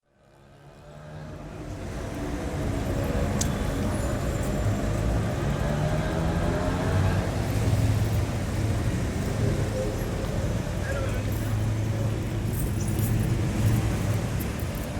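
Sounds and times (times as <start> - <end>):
road traffic passing: 0.2 - 14.9.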